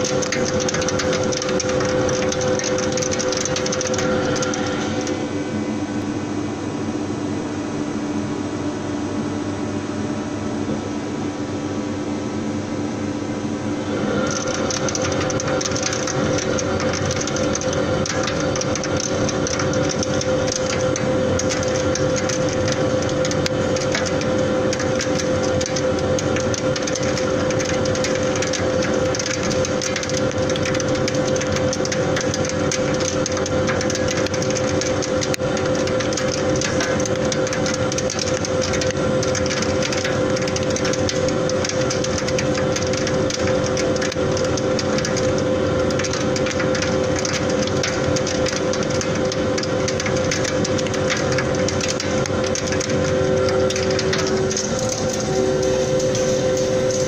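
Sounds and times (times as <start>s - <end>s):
lathe turning metal: 51.1s - 57.0s.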